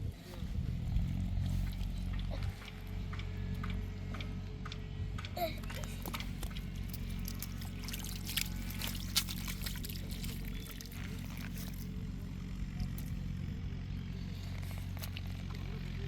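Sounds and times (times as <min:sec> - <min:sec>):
low hum: 0:00.0 - 0:16.0
water pouring and trickling: 0:06.0 - 0:12.0
water splashes: 0:06.0 - 0:12.0.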